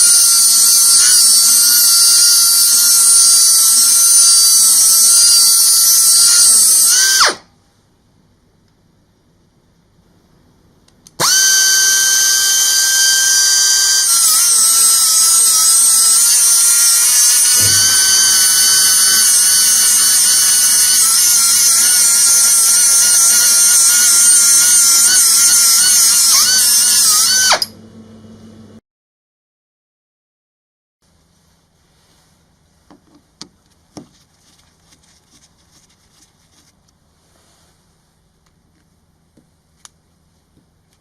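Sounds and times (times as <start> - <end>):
air grinder high-pitched whine: 0.0 - 7.4, 11.2 - 27.8.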